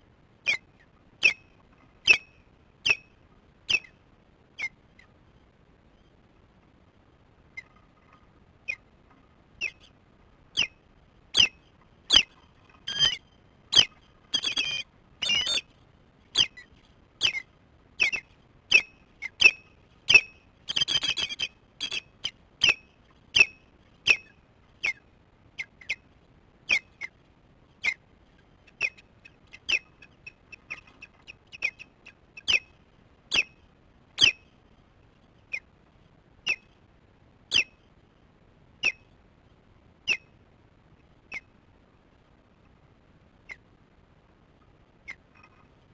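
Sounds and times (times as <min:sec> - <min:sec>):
osprey alarm calls: 0:00.4 - 0:03.1, 0:03.7 - 0:04.0, 0:04.6 - 0:05.1, 0:07.6 - 0:08.9, 0:09.6 - 0:09.9, 0:10.5 - 0:15.7, 0:16.3 - 0:25.0, 0:28.8 - 0:32.7, 0:33.3 - 0:33.6, 0:34.2 - 0:34.4, 0:37.5 - 0:37.7, 0:38.8 - 0:39.0, 0:40.1 - 0:40.3.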